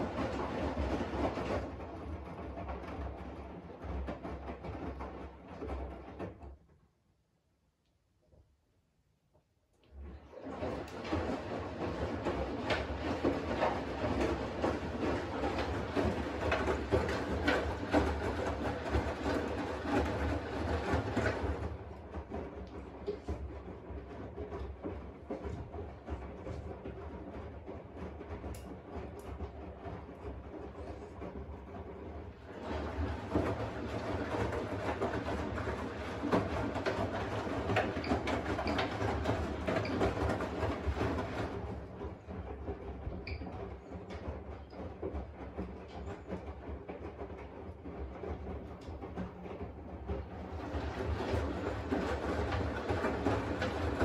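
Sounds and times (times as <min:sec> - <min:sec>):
laundry and water sloshing: 0:10.0 - 0:22.1
washing machine motor hum: 0:10.0 - 0:48.8.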